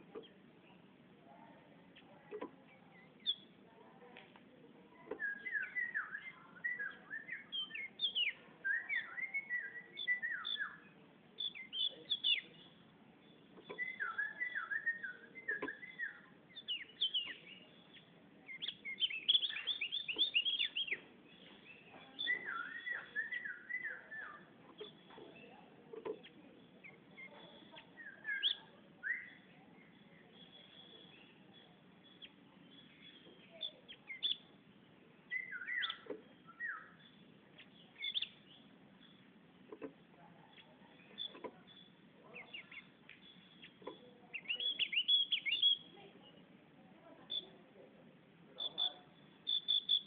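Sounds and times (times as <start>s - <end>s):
bird chirping and whistling: 5.2s - 10.8s, 13.6s - 17.5s, 18.5s - 21.0s, 22.2s - 25.1s, 28.0s - 29.4s, 32.8s - 34.4s, 35.3s - 37.1s, 38.0s - 38.5s, 44.4s - 45.9s, 49.5s - 50.0s.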